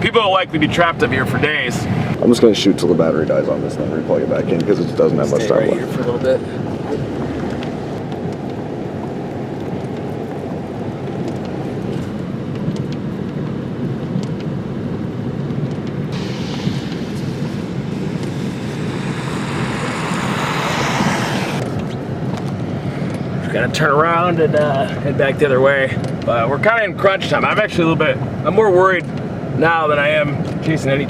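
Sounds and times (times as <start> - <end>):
vehicle interior low rumble: 6.2 - 23.2
hissing rush: 16.1 - 21.7.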